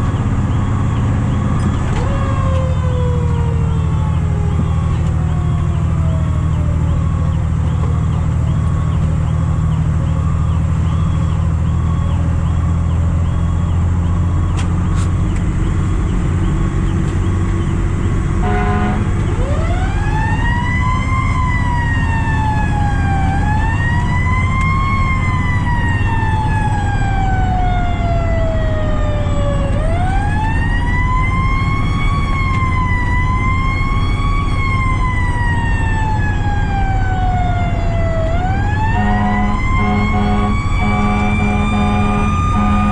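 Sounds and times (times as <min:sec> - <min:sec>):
engine running: 0:00.0 - 0:42.9
siren blast: 0:00.6 - 0:09.4, 0:18.4 - 0:42.9
siren winding up and down: 0:19.3 - 0:42.9.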